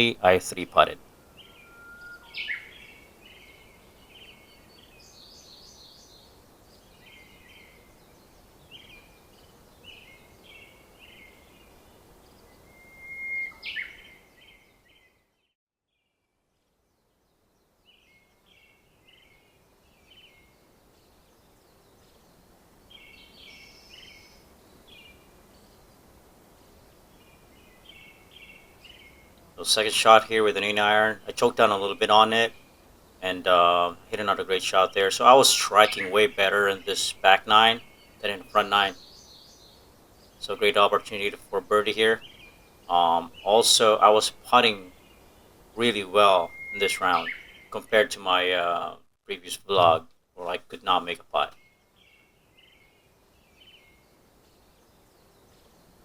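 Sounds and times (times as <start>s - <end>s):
songbirds chirping and singing: 0.0s - 11.7s, 12.3s - 15.1s, 27.1s - 56.0s
faint outdoor background noise: 0.0s - 56.0s.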